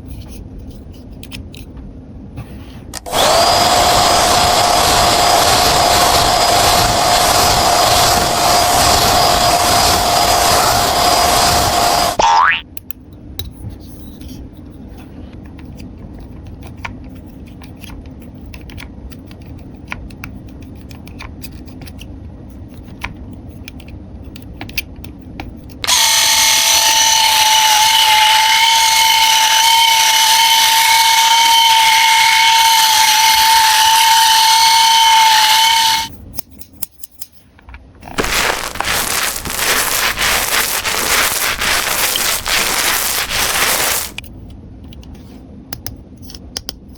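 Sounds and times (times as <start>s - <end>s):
toy motor whining: 3.0s - 12.5s, 25.8s - 36.1s, 38.1s - 44.2s.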